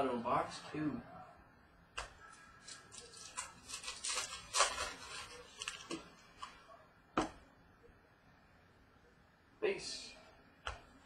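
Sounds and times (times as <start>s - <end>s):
cards rustling and sliding: 2.0s - 6.5s.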